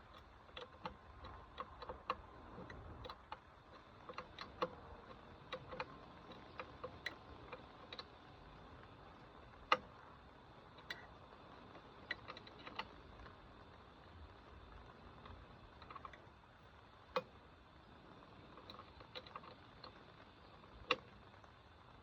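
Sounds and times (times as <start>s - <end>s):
small tools clicking and tapping: 0.0s - 8.1s, 18.6s - 20.0s.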